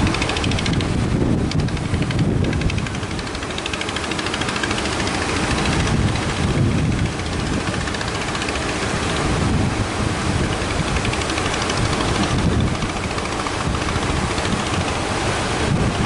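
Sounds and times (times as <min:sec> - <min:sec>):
engine running: 0:00.0 - 0:16.0
surf: 0:00.0 - 0:16.0
wind noise: 0:00.0 - 0:16.0.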